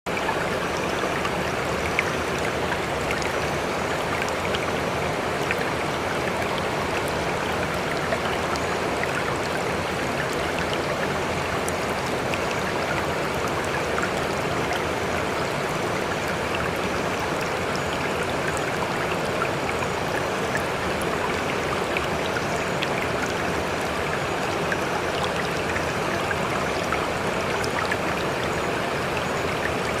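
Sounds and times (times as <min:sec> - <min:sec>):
water rushing: 0:00.1 - 0:30.0.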